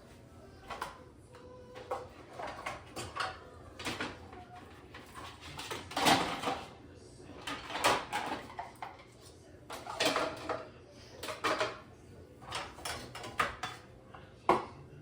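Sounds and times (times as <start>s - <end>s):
dishes clattering in dishwasher rack: 1.8s - 6.8s, 7.4s - 13.9s.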